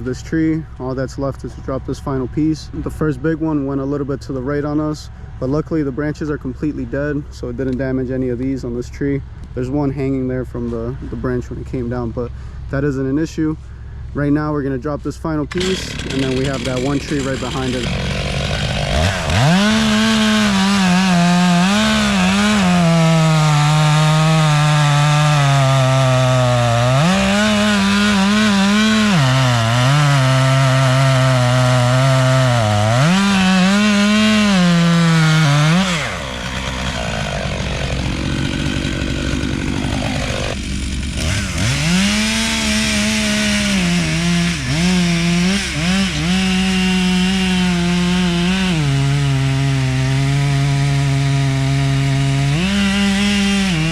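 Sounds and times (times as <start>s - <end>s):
chainsaw cutting wood: 15.5s - 53.9s.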